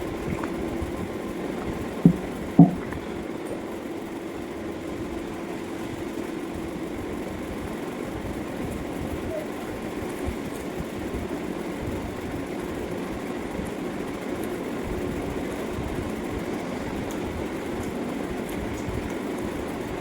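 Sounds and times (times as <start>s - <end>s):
low hum: 0.0s - 4.4s
sharp knocks: 2.0s - 3.1s.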